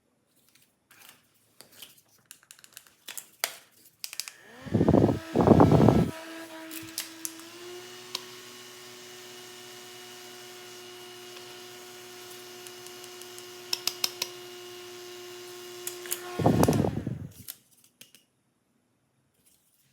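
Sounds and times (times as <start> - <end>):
toy motor whining: 4.2 - 17.5.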